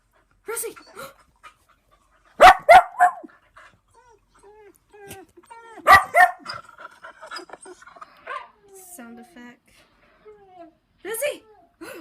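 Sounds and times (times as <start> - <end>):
dog barking: 2.4 - 3.3, 5.8 - 6.5
dog whining: 3.9 - 8.8.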